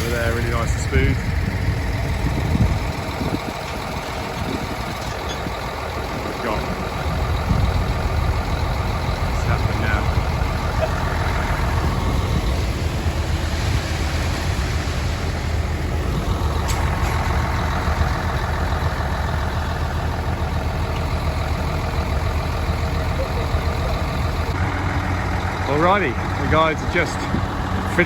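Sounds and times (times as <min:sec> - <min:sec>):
engine running steadily: 0:00.0 - 0:28.0.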